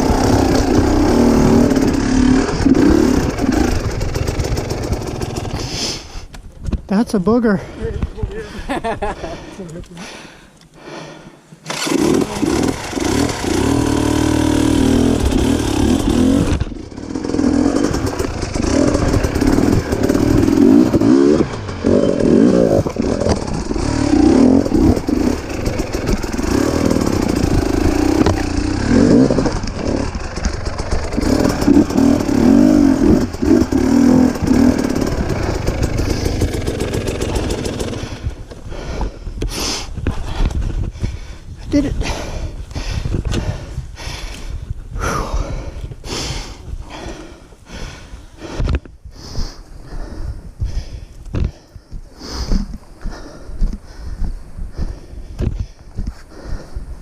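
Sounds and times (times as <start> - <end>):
dirt bike engine revving: 0.0 - 5.7, 11.7 - 38.4.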